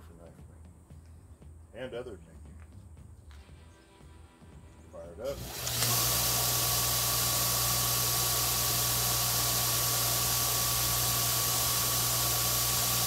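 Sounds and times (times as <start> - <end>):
belt grinder running: 5.3 - 13.0.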